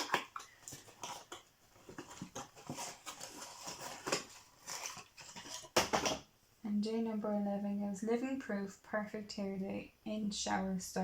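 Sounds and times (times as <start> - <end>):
cardboard and paper rustling: 0.0 - 6.2.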